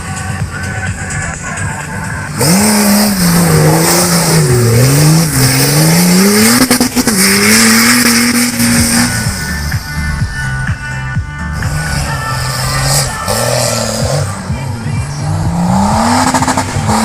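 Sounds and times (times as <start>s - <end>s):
engine revving hard: 2.3s - 9.7s, 11.6s - 17.0s.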